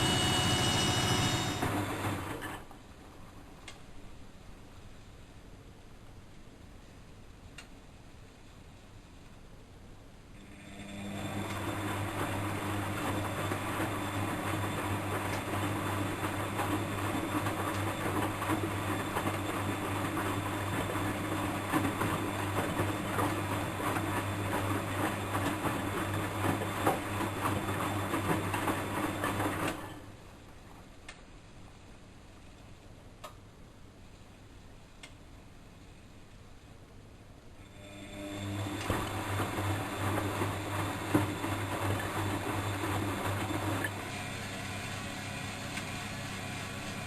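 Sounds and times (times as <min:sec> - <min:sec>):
washing machine hum and rattle: 0:00.0 - 0:04.0, 0:10.4 - 0:31.0, 0:37.6 - 0:47.0.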